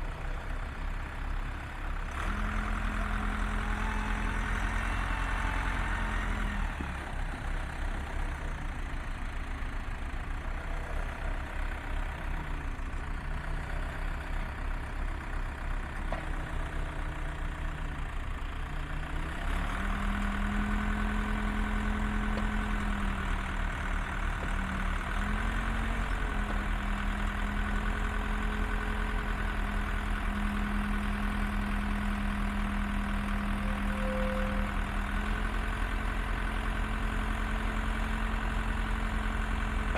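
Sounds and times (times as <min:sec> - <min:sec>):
backhoe engine running: 0:00.0 - 0:39.9.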